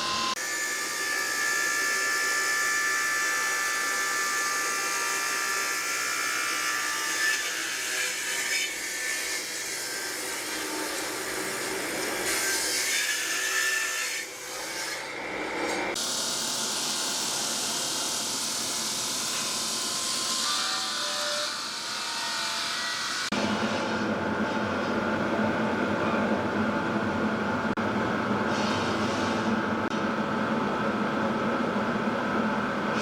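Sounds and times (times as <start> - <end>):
shrill saw whine: 0.0 - 5.9.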